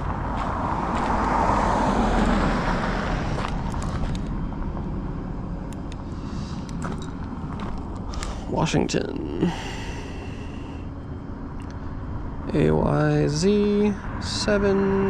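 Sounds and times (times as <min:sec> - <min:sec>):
car passing on road: 0:00.0 - 0:08.0.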